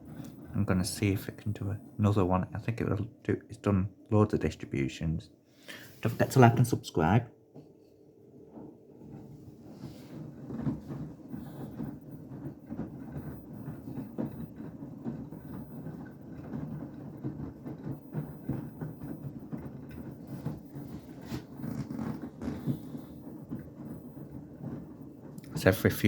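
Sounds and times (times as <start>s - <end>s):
washing machine drum sloshing: 0.0s - 26.0s.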